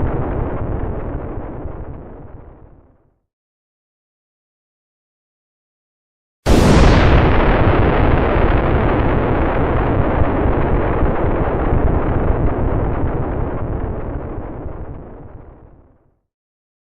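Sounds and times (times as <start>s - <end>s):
explosion blast: 0.0s - 3.0s, 6.4s - 16.0s
low rumble: 0.0s - 3.0s.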